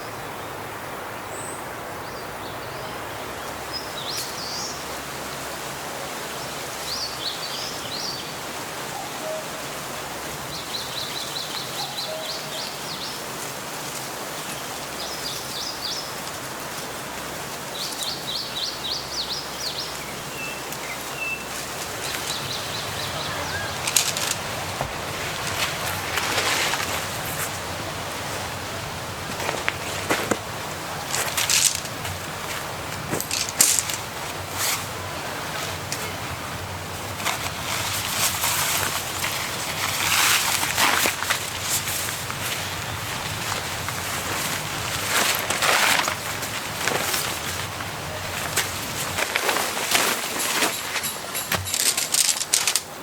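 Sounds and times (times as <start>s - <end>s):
wind through forest trees: 0.0s - 53.0s
small birds chirping: 17.7s - 49.2s.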